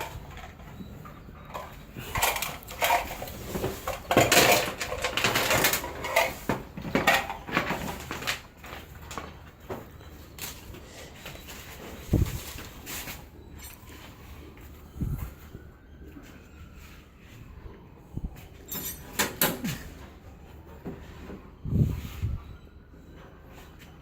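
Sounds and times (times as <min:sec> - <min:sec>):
metal parts clattering: 0:00.0 - 0:09.4, 0:18.6 - 0:20.0.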